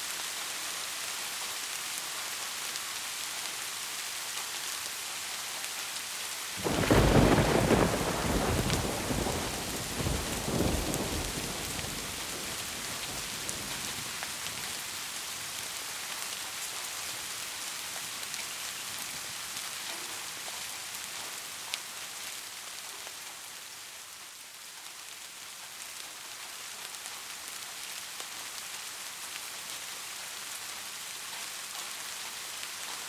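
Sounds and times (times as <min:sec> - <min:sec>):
steady rain falling: 0:00.0 - 0:33.0
low thunder rumble: 0:06.6 - 0:14.2.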